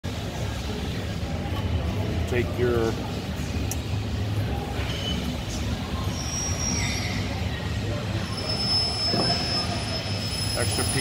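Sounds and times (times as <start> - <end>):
low mechanical hum: 0.1 - 11.0
thin high whine: 5.9 - 11.0.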